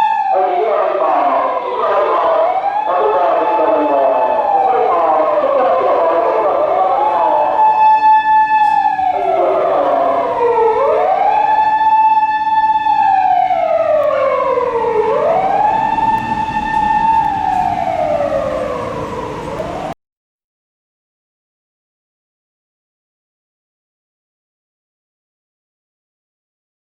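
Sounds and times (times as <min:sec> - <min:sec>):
police siren wailing: 0:00.0 - 0:20.0.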